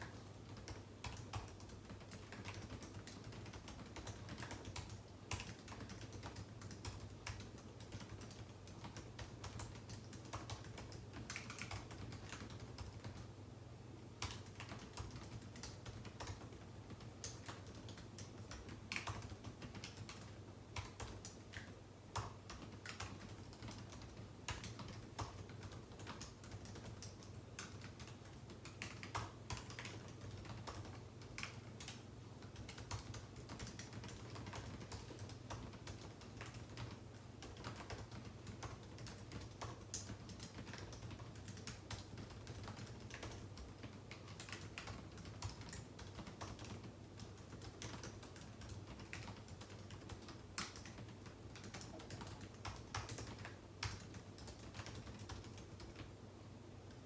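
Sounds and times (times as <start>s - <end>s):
keyboard typing: 0.0s - 13.3s, 14.2s - 56.1s.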